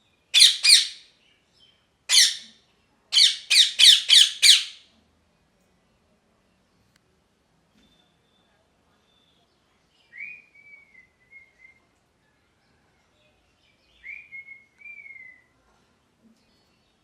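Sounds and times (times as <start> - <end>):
parrot whistled calls: 0.4 - 1.0, 3.2 - 4.8.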